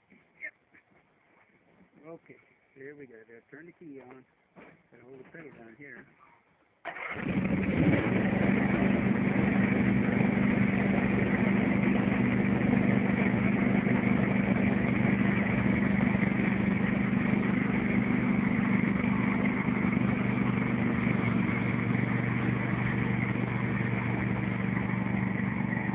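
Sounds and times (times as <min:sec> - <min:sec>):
riding mower engine starting: 0:06.9 - 0:25.9.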